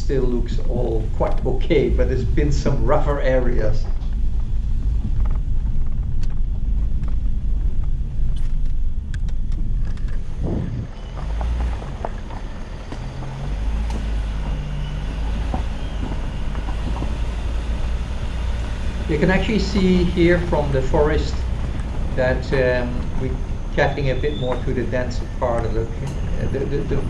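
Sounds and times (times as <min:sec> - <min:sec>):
car engine and road rumble: 0:00.0 - 0:27.0
knocks and rattles from bumps: 0:11.0 - 0:27.0.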